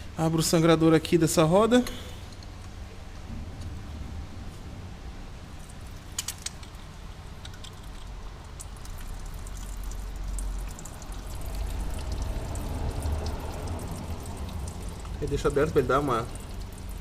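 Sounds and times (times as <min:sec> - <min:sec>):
steady low hum: 0:00.0 - 0:17.0
brake fluid trickling: 0:05.5 - 0:17.0.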